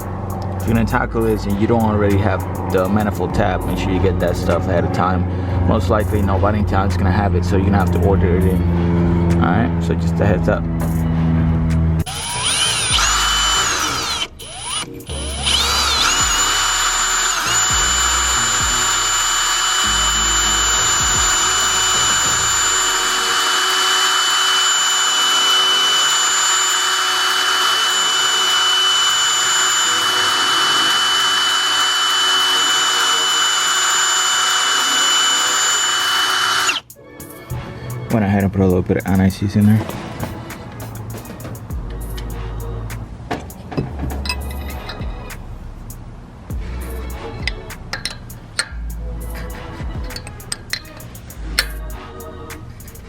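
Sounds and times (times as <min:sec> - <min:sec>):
electric drill whining: 0:12.0 - 0:36.9.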